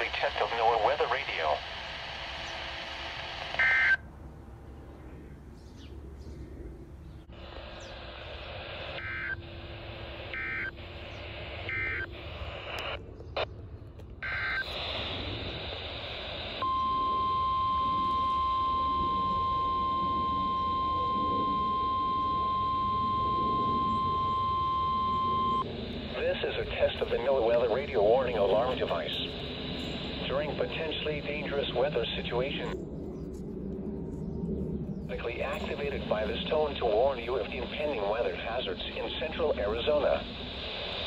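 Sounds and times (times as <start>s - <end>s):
radio hiss: 0.0s - 4.0s, 7.3s - 13.5s, 14.2s - 32.8s, 35.1s - 41.0s
steady alarm tone: 3.6s - 4.0s, 9.0s - 10.9s, 16.6s - 26.1s
digital data bursts: 10.2s - 12.6s.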